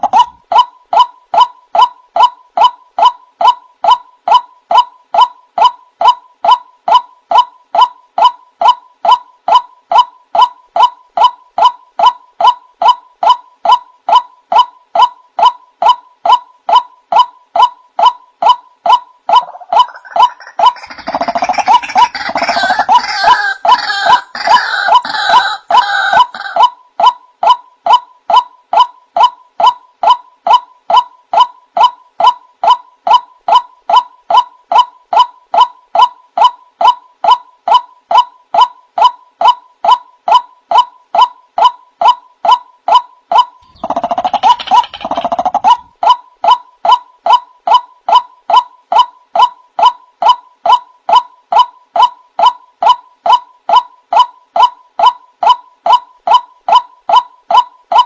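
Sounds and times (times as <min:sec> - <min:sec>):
harsh gurgling calls: 0:19.4 - 0:26.5.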